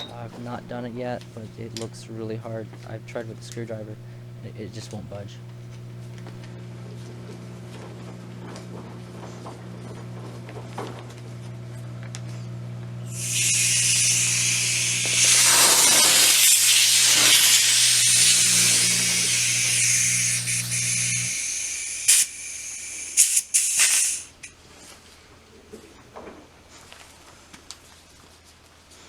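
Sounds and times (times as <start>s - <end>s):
steady low hum: 0.0s - 10.1s, 11.3s - 24.5s
gas hissing from magazine: 13.1s - 24.5s.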